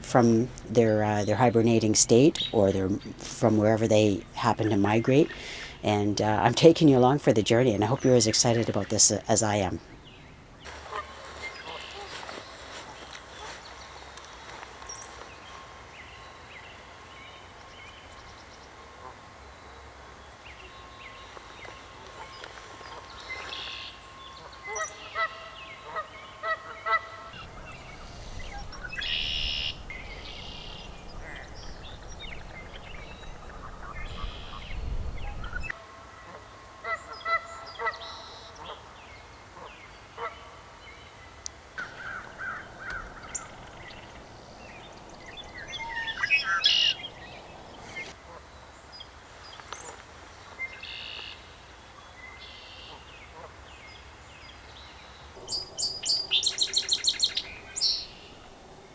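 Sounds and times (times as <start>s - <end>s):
waterfowl honking: 10.7s - 15.3s, 18.8s - 40.7s, 41.8s - 48.5s
small birds chirping: 20.2s - 35.8s, 41.8s - 51.4s, 53.9s - 58.9s
wind rumble on microphone: 27.4s - 35.8s, 41.8s - 48.1s.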